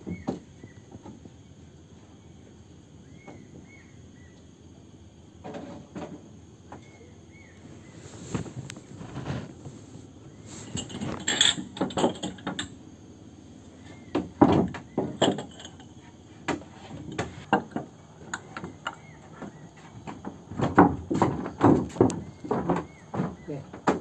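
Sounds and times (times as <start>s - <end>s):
knocks and clatter: 5.4s - 6.8s, 10.6s - 12.8s, 13.8s - 24.0s.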